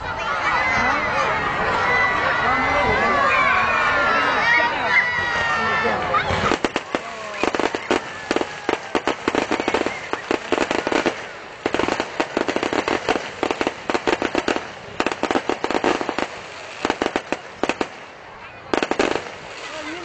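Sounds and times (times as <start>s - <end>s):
fireworks crackling and popping: 6.0s - 20.0s.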